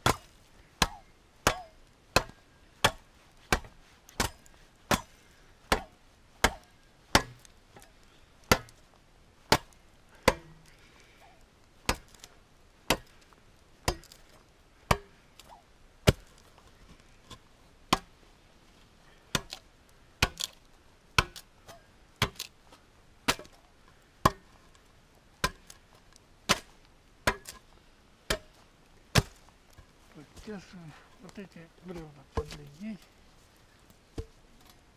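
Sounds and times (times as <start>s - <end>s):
saw edge chopping wood: 0.0s - 5.1s, 5.7s - 7.5s, 12.9s - 13.1s, 22.2s - 22.5s, 31.9s - 32.8s.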